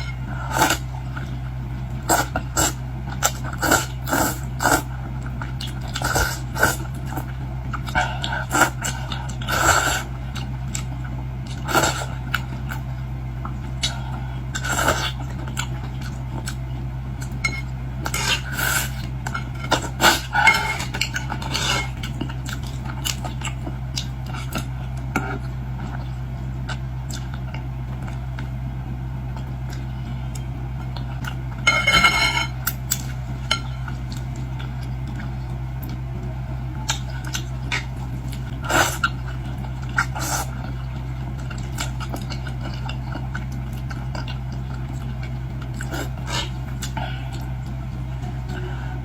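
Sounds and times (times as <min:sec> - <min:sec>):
low hum: 0:00.0 - 0:49.0
tableware clinking: 0:31.7 - 0:32.6.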